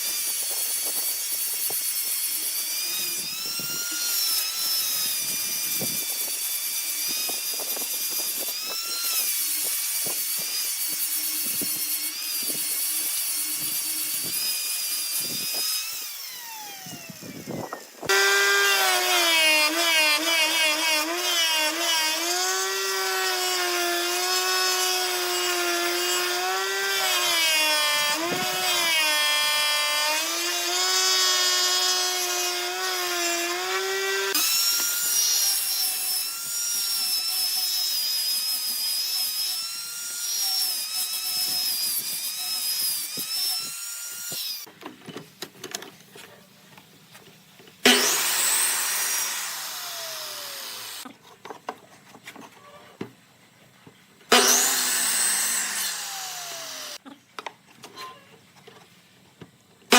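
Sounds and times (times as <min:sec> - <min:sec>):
tool cutting spinning wood: 0:00.0 - 0:44.7, 0:47.8 - 0:51.1, 0:54.3 - 0:57.0
wood lathe whining: 0:00.0 - 0:44.7, 0:54.3 - 0:57.0.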